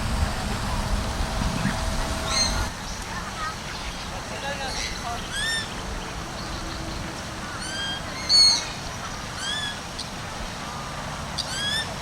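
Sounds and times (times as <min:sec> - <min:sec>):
low background rumble: 0:00.0 - 0:04.1
birds whistling: 0:01.6 - 0:02.7, 0:04.7 - 0:09.8, 0:11.4 - 0:12.0.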